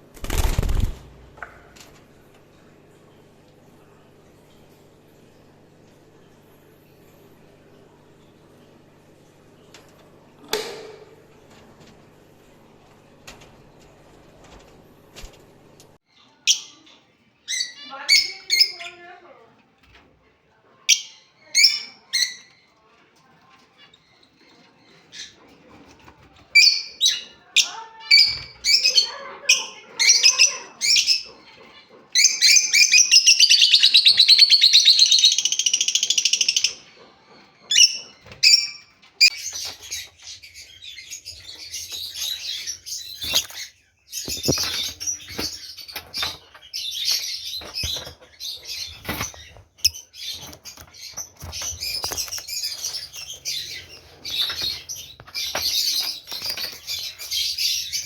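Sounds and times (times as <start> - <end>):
dense chatter of many birds: 16.1 - 58.0.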